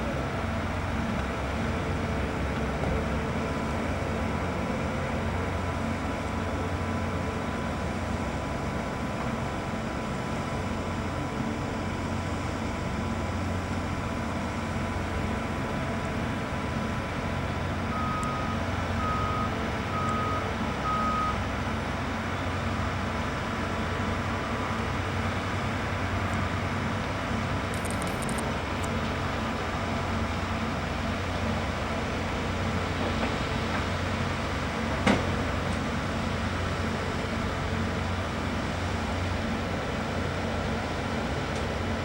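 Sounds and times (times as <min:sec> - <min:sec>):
diesel machinery running: 0:00.0 - 0:42.0
backup alarm beeps: 0:17.9 - 0:21.4.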